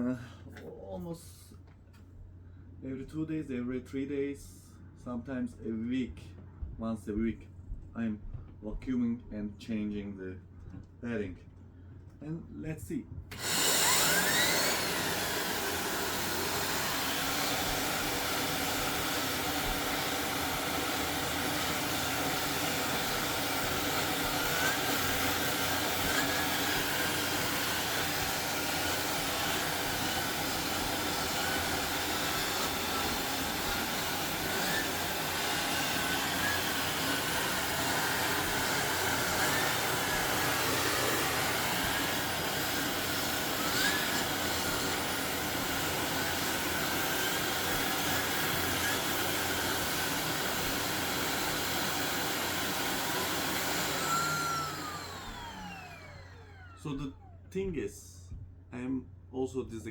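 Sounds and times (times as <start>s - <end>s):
vacuum cleaner running: 13.3s - 57.6s.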